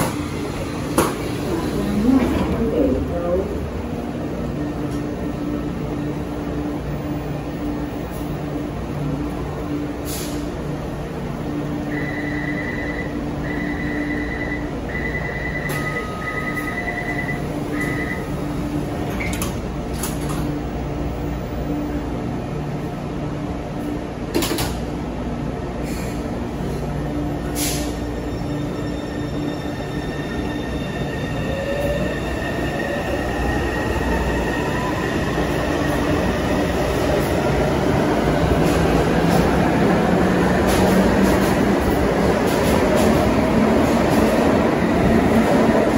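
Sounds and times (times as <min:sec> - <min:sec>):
train doors shutting: 0:00.0 - 0:03.8, 0:09.9 - 0:10.7, 0:11.8 - 0:20.8, 0:24.3 - 0:24.9, 0:27.4 - 0:45.9
door-closing warning beeps: 0:12.0 - 0:18.4.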